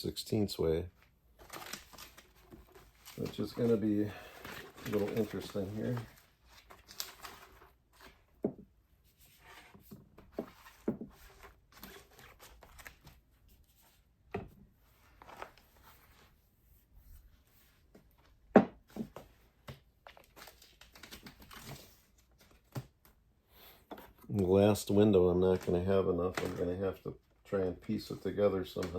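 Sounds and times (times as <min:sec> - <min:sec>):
plastic film crinkling: 0:01.3 - 0:08.1.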